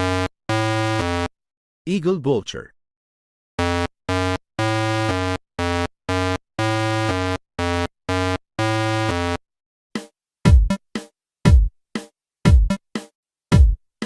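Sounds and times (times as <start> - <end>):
staccato synthesizer melody: 0.0 - 1.3, 3.6 - 9.4, 10.0 - 13.8.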